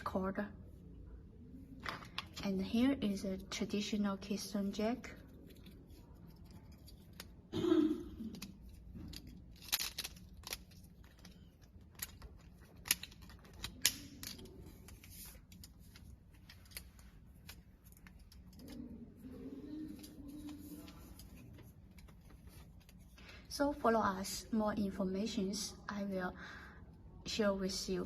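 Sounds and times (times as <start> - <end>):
plastic clicks and rattling: 8.2 - 18.9.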